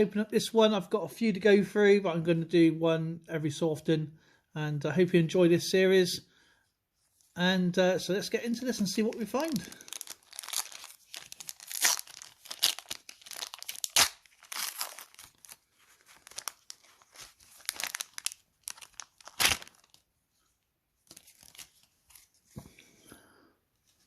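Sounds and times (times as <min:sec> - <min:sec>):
foil pack tearing and crinkling: 0:09.4 - 0:20.0.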